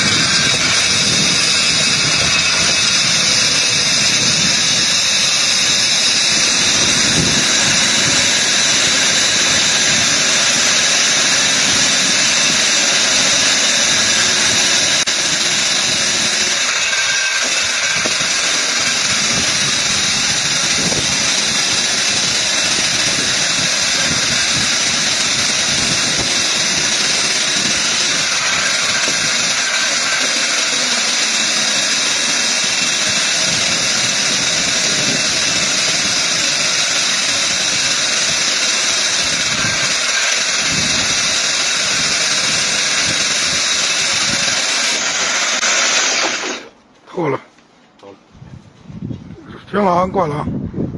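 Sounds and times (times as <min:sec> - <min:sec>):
drilling machine running with hiss: 0:00.0 - 0:46.7.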